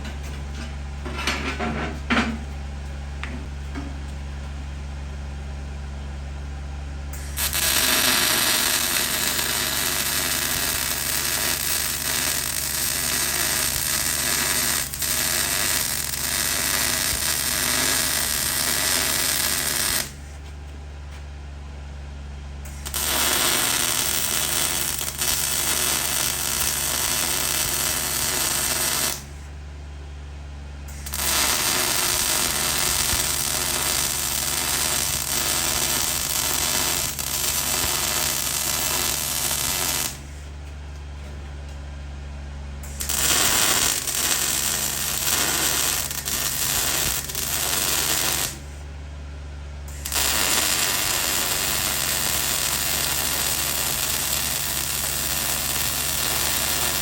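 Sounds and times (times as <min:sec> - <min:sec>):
welder low hum: 0:00.0 - 0:57.0
welding arc crackle: 0:07.1 - 0:20.4, 0:22.6 - 0:29.4, 0:30.9 - 0:40.4, 0:42.8 - 0:48.8, 0:49.9 - 0:57.0.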